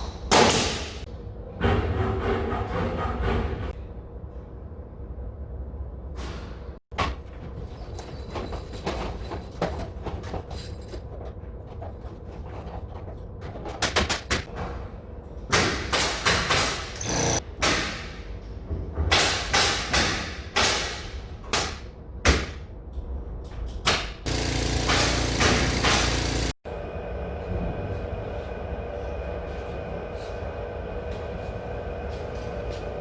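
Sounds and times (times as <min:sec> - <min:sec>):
construction knocks and thuds: 0:23.8 - 0:26.6.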